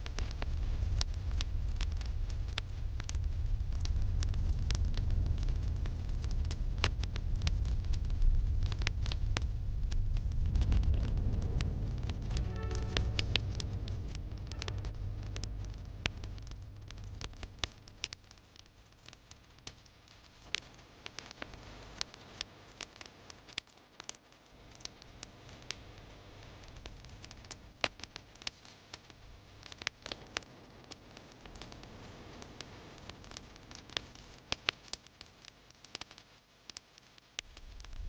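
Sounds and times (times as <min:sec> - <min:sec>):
soft hiss: 0:00.0 - 0:38.0
wood fire crackling: 0:00.0 - 0:38.0
low rumble: 0:00.4 - 0:18.1.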